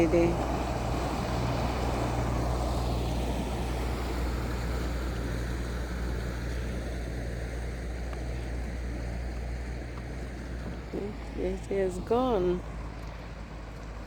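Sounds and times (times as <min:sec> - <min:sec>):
boat engine humming: 0:00.0 - 0:14.0.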